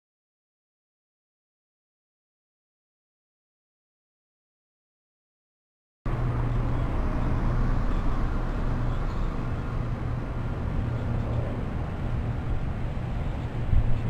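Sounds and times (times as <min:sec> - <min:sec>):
constant low hum: 0:06.1 - 0:14.0.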